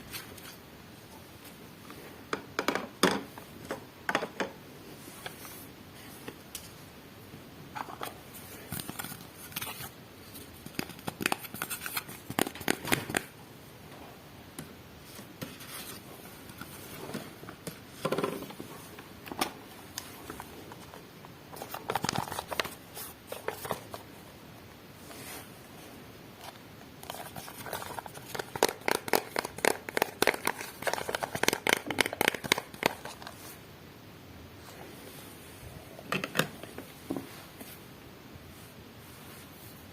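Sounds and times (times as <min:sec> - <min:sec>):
packaging rustling: 0:18.5 - 0:24.1.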